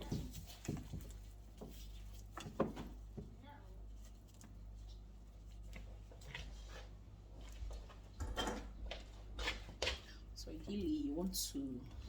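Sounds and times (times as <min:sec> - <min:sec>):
soft kitchen knocks and clicks: 0:08.2 - 0:09.1.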